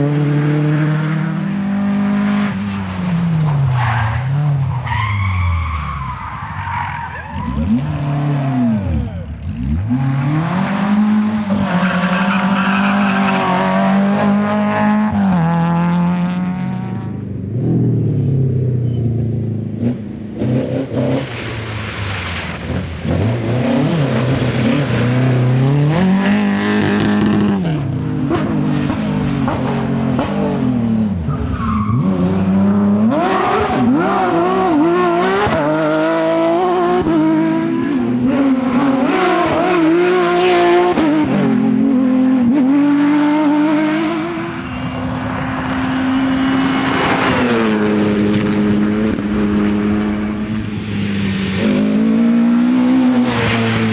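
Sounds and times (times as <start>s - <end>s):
rally car engines revving: 0.0s - 53.9s
tyres squealing and skidding: 2.4s - 15.3s, 20.5s - 37.2s, 43.6s - 53.9s.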